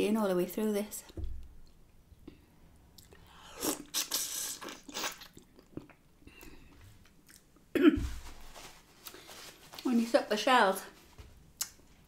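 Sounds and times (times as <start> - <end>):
person chewing shrimp: 2.9 - 7.7.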